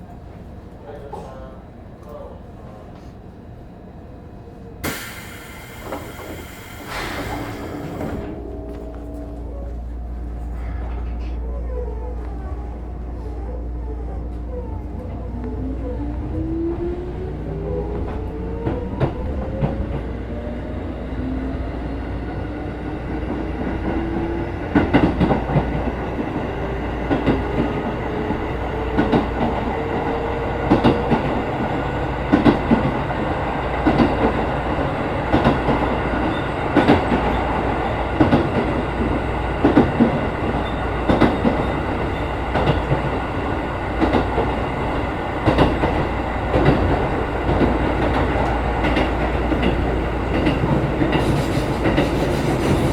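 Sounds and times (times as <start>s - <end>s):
electric train motor whine: 4.8s - 11.5s.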